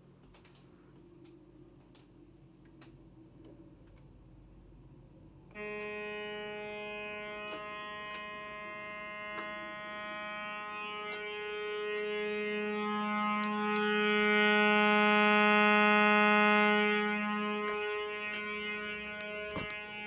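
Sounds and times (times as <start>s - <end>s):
electronic keyboard buzzy note: 5.6s - 20.0s.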